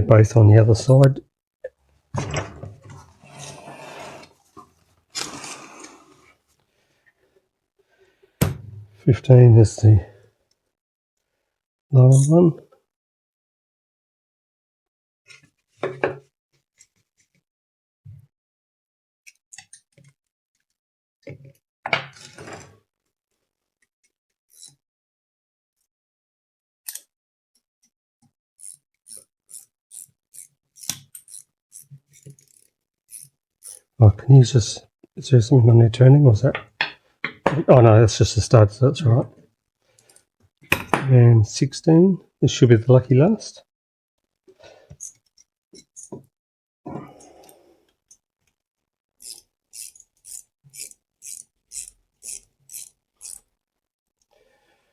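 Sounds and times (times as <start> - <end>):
ratchet clicking: 28.6 - 33.9, 49.2 - 53.4.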